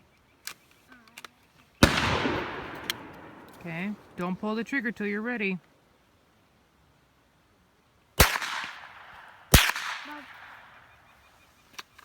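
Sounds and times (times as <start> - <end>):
rifle shots with echo: 1.8 - 4.3, 8.2 - 10.9.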